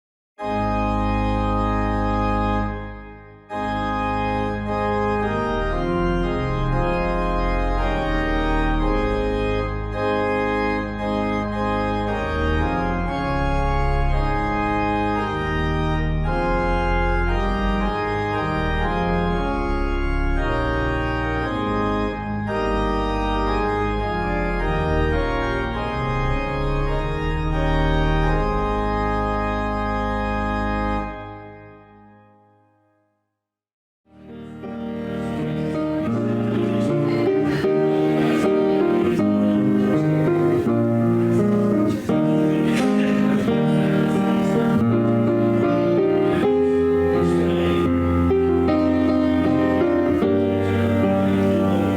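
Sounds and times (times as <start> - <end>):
organ music: 0.4 - 32.6, 34.1 - 51.9.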